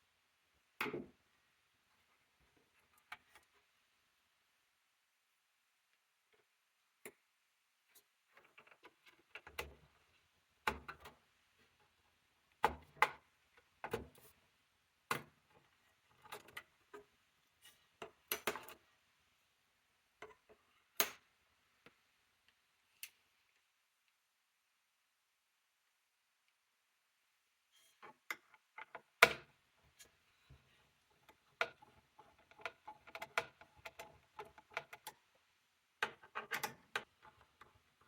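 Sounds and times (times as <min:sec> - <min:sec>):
plastic and metal clicks and knocks: 0:12.6 - 0:14.3, 0:28.0 - 0:35.4, 0:36.0 - 0:38.0.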